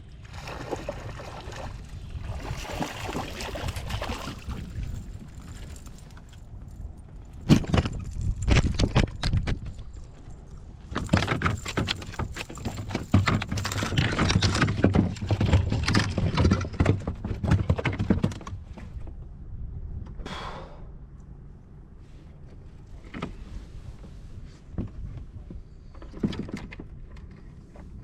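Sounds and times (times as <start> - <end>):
gear knocking and rattling: 10.9 - 18.9.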